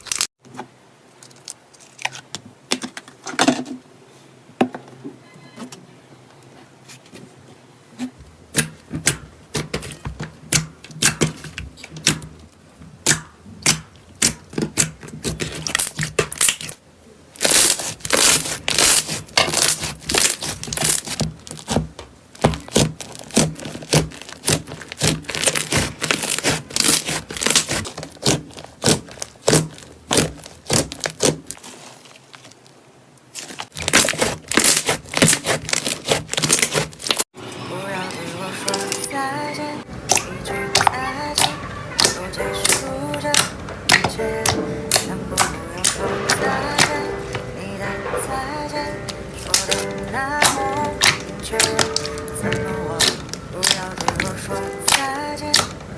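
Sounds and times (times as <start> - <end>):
slime squishing and crackling: 13.0 - 16.8, 17.4 - 37.3, 40.1 - 47.5, 48.9 - 55.9.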